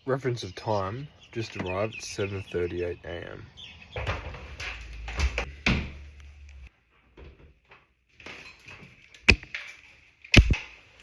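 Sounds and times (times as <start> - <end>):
knocks and thuds: 4.0 - 6.0.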